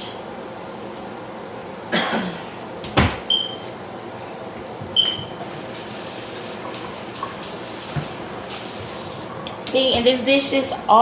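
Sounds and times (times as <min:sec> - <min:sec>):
steady hiss: 0:05.4 - 0:09.3.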